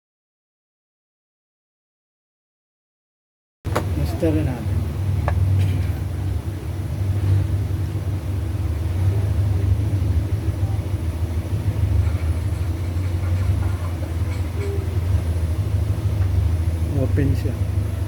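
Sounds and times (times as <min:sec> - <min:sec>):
low engine-like rumble: 0:03.7 - 0:18.0.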